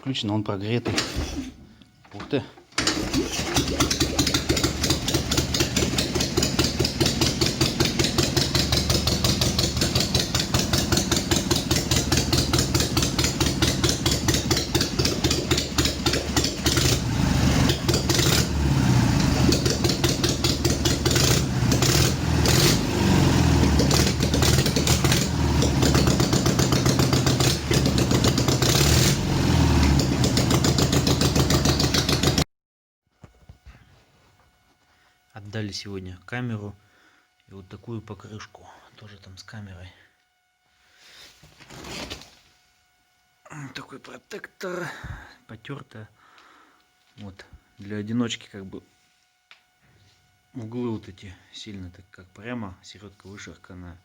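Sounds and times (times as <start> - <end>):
motorcycle engine idling and revving: 2.9 - 32.5.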